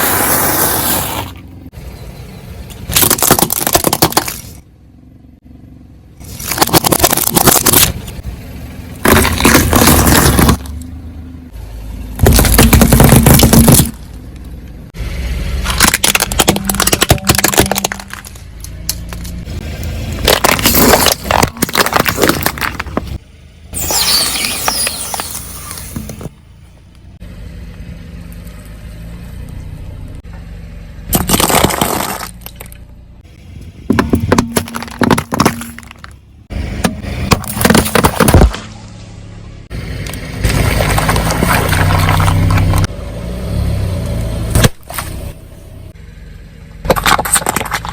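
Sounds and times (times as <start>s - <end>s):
objects crushed under car tyres: 2.9s - 4.6s, 6.2s - 8.2s, 9.0s - 10.8s, 12.2s - 14.2s, 15.6s - 23.2s, 31.1s - 32.8s, 33.9s - 38.9s, 40.4s - 42.9s, 46.8s - 47.9s.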